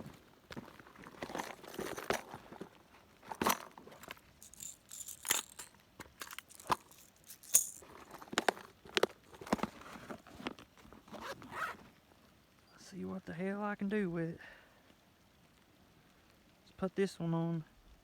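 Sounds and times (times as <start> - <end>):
jingling rattles: 1.1 - 9.7
fishing tackle clicks and knocks: 3.3 - 9.7.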